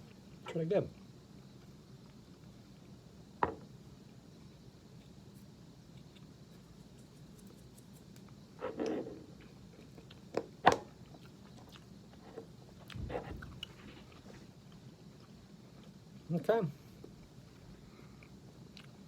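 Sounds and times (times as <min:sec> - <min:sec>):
person chewing food: 0:09.3 - 0:10.4, 0:11.0 - 0:16.0, 0:18.0 - 0:19.0.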